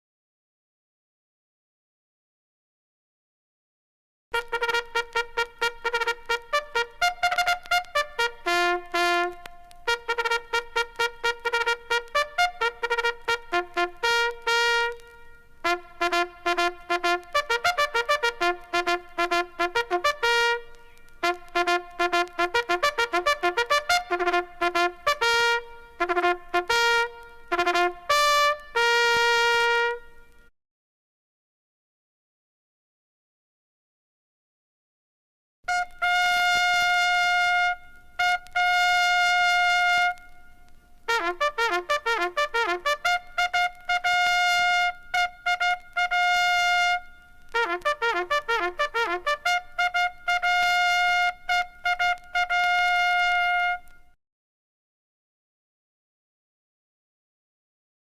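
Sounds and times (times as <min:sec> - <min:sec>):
bugle call: 0:04.4 - 0:30.4, 0:35.7 - 0:54.1.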